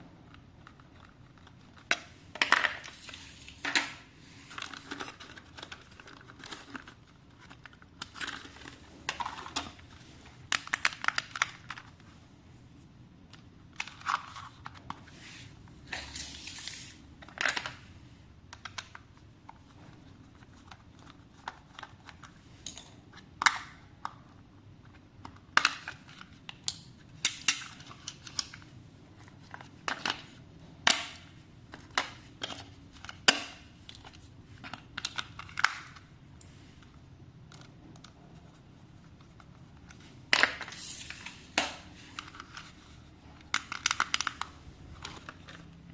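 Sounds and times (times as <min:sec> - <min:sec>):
packaging crinkling and rustling: 0:00.3 - 0:12.2, 0:37.5 - 0:45.9.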